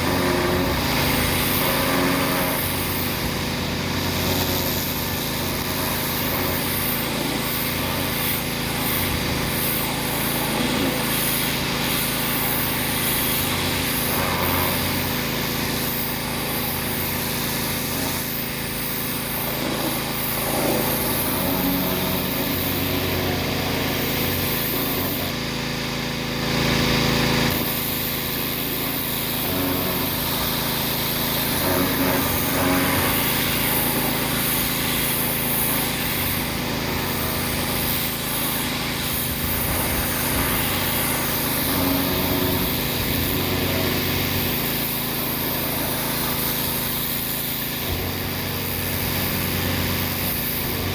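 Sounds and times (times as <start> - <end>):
water spray hissing: 0.0 - 25.3, 27.5 - 50.9
pressure washer engine running: 0.0 - 50.9.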